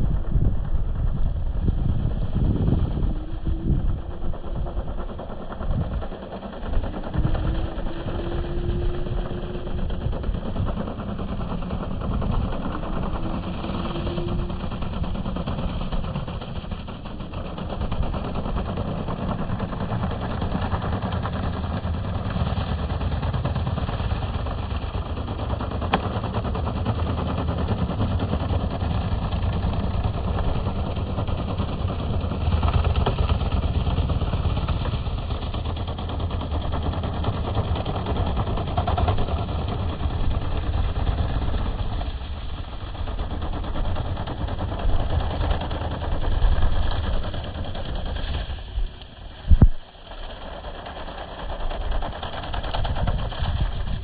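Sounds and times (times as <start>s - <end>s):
electric snow blower running: 2.7s - 18.7s.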